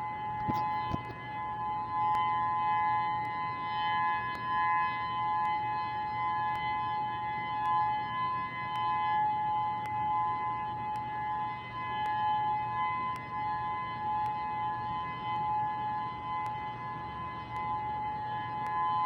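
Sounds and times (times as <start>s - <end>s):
warning siren two-tone note: 0.0s - 19.0s.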